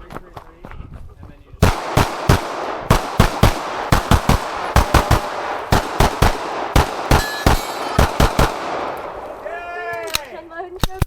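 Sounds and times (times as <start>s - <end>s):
rapid pistol shots with echo: 1.6s - 9.4s.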